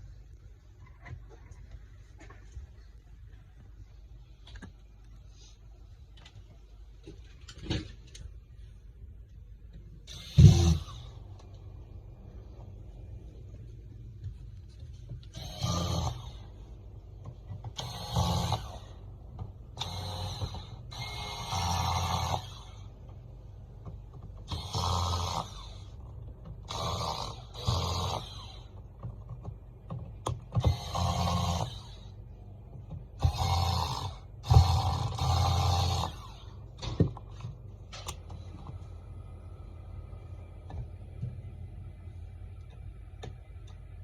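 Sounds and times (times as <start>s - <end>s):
small motor whirring: 15.3s - 16.5s, 17.7s - 19.0s, 19.8s - 22.9s, 24.5s - 26.0s, 30.6s - 32.1s, 33.2s - 36.6s.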